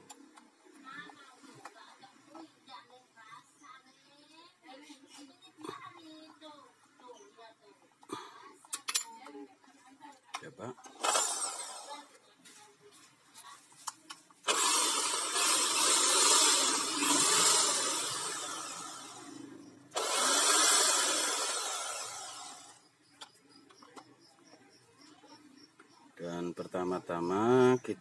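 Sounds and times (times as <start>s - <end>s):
handheld power tool running: 11.0s - 12.0s, 14.5s - 22.8s.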